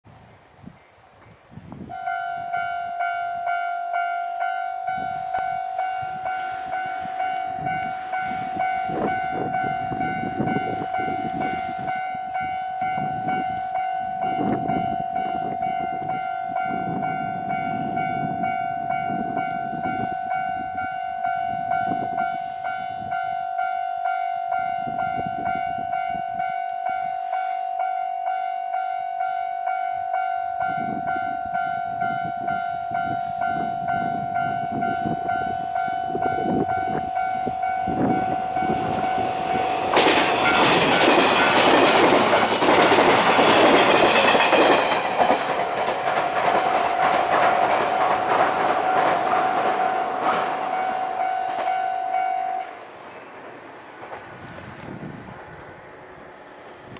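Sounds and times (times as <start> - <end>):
level crossing alarm ringing: 1.9 - 53.2
train wheels clattering on rails: 36.4 - 56.9.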